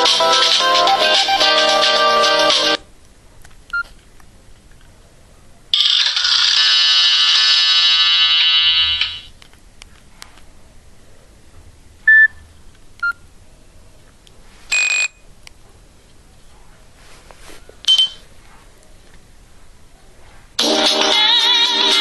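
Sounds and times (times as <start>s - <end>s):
phone ringtone music: 0.0s - 2.8s, 5.8s - 9.3s
phone alert beeps and chirps: 14.7s - 15.2s.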